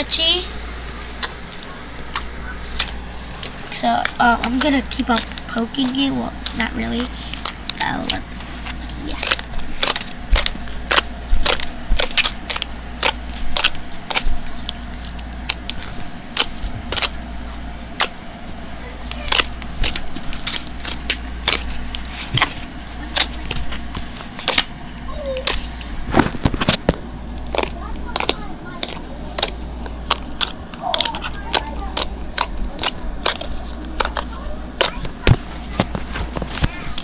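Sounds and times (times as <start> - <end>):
low hum: 0.0 - 37.0
slime clicking and popping: 9.2 - 17.1, 19.2 - 23.3, 24.4 - 24.7, 27.4 - 35.1.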